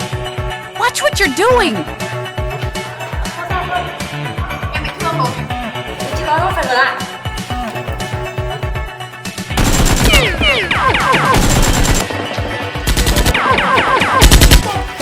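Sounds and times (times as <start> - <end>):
background music: 0.0 - 15.0
machine-gun fire: 9.6 - 12.1, 12.9 - 14.7.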